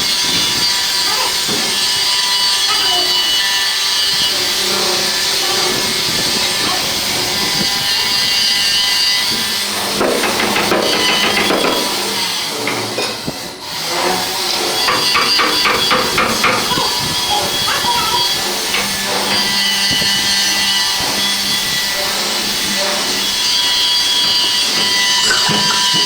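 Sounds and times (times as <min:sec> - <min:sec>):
hand tool rasping on stone: 0:00.4 - 0:26.0
irregular knocks and scrapes: 0:09.2 - 0:13.4.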